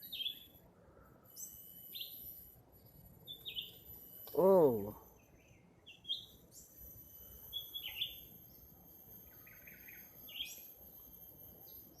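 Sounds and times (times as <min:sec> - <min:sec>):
high-pitched insect drone: 0:06.5 - 0:12.0.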